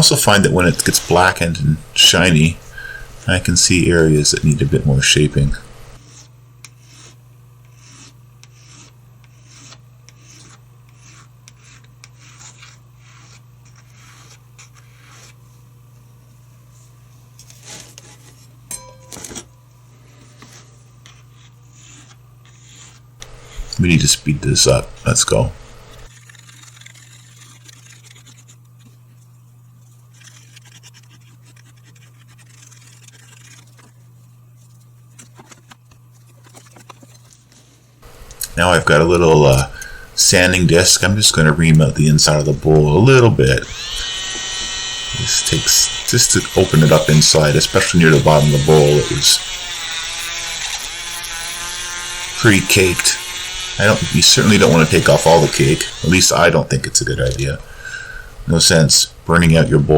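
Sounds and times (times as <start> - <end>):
steady low hum: 0.0 - 26.2, 37.6 - 49.8, 51.3 - 59.9
sandpaper rasping rubs: 6.0 - 15.4, 20.1 - 24.2, 26.0 - 28.6, 30.1 - 34.0, 43.6 - 56.5.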